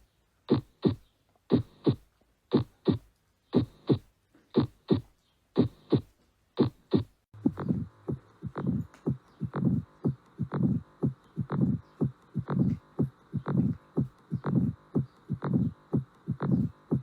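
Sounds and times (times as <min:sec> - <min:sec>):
heartbeat lub-dub: 0:00.5 - 0:17.0
noisy heartbeat recording: 0:00.5 - 0:17.0.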